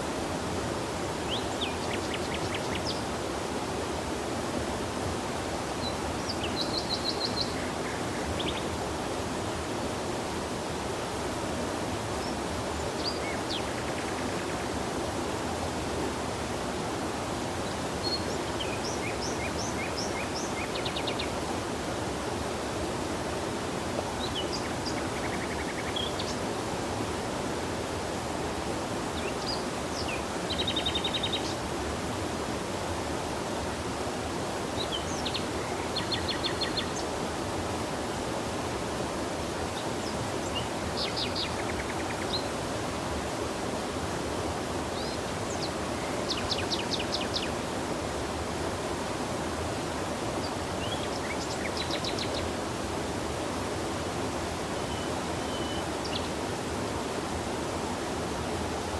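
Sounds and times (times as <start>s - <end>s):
flowing stream water: 0.0s - 58.9s
songbirds trilling and chirping: 29.1s - 31.6s.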